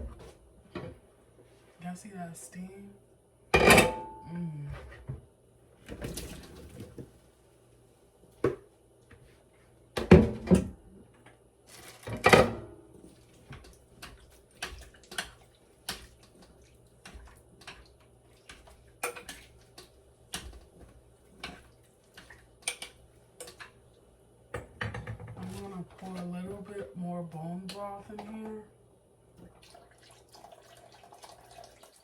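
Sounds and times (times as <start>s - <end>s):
pots and dishes clattering: 3.6s - 4.2s.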